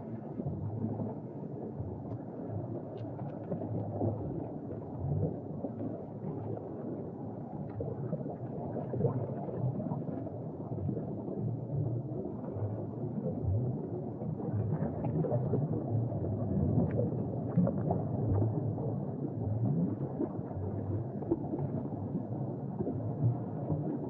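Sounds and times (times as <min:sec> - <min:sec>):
underwater regulator bubbles burbling: 0:07.8 - 0:24.0.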